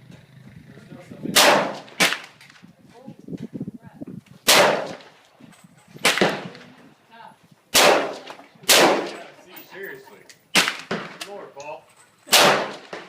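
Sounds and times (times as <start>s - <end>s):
rifle shots with echo: 1.3s - 2.4s, 4.4s - 5.2s, 6.0s - 6.6s, 7.7s - 9.2s, 10.5s - 11.2s, 12.3s - 13.0s.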